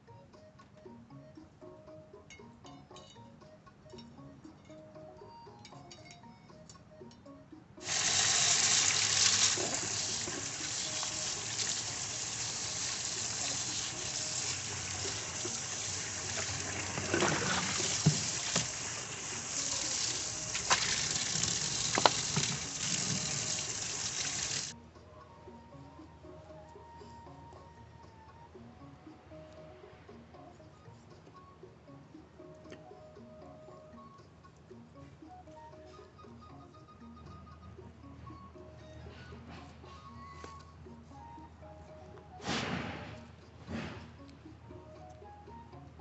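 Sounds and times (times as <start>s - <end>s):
tap water running into sink: 7.8s - 24.7s
sharp knocks and splashes: 20.5s - 23.2s.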